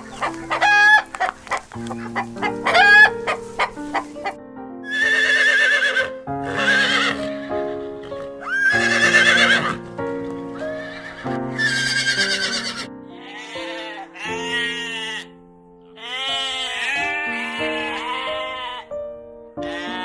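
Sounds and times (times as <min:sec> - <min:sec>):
background music: 0:00.0 - 0:20.0
horse whinnying: 0:04.9 - 0:09.8, 0:10.8 - 0:14.4.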